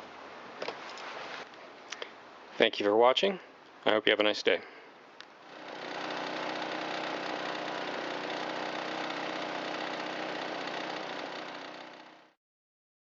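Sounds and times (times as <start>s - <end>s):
string trimmer engine running: 5.4s - 12.4s.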